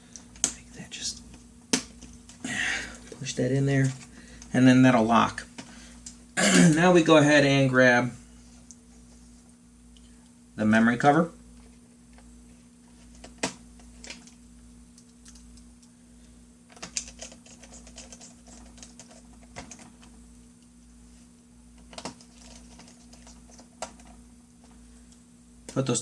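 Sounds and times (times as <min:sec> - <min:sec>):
plastic laptop parts clicking: 0:16.7 - 0:20.0.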